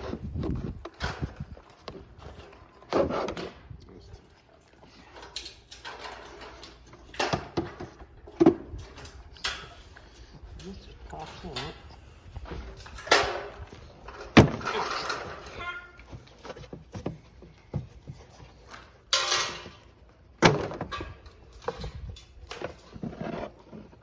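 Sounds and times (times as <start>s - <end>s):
knocks and clunks on plastic housing: 7.2s - 8.9s, 12.5s - 18.5s, 20.4s - 24.0s.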